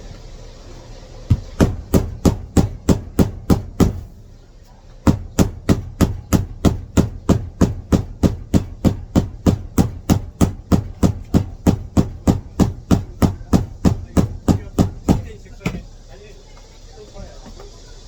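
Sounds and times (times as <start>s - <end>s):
hammer tapping on sandal sole: 1.3s - 4.1s, 5.1s - 15.8s.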